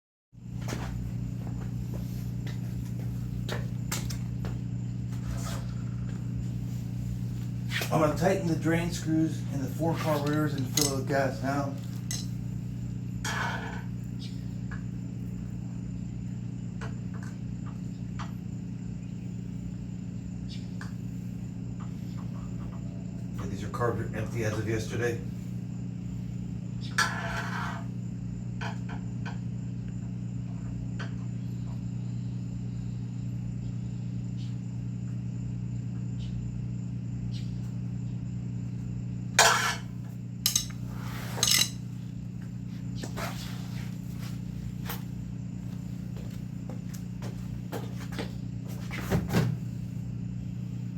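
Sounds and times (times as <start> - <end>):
steady low hum: 0.4 - 50.9
screwdriver clicks and scrape: 10.1 - 11.0, 12.0 - 12.3, 40.5 - 40.8, 41.4 - 41.8.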